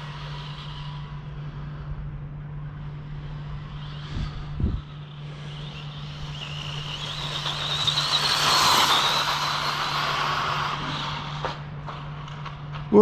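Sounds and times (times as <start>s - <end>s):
electric motor whining: 2.7s - 12.8s
tyre and road noise: 3.1s - 13.0s.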